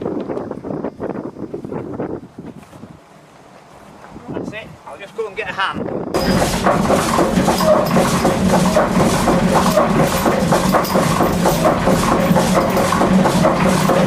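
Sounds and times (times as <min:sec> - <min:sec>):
windmill machinery rumbling: 0:05.8 - 0:14.0
fast machinery clatter: 0:06.2 - 0:14.0.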